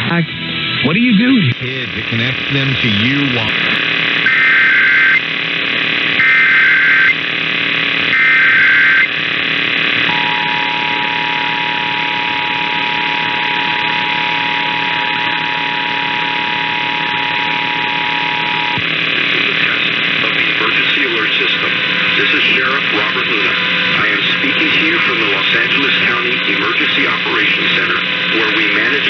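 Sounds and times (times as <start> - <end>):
data tone bursts: 4.2 - 5.3, 6.2 - 7.2, 8.1 - 9.2, 10.0 - 19.9
two-tone attention signal: 4.3 - 5.2, 6.2 - 7.2, 8.1 - 9.1, 10.1 - 18.8.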